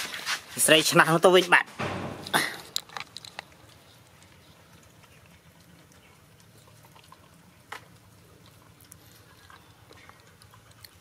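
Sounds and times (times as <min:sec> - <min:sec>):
dog chewing food: 0:02.7 - 0:11.0.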